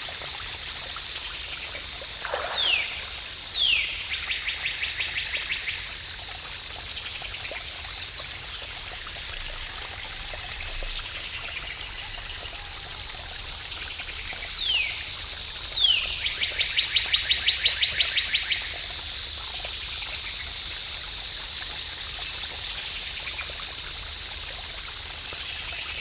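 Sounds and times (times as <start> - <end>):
songbird falling whistle: 2.2 - 3.8
songbird fast trill: 2.2 - 4.5.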